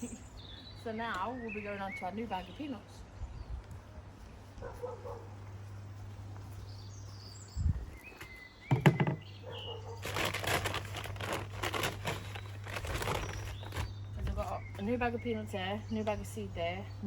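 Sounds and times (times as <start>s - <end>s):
plastic bag rustling: 9.9s - 14.5s.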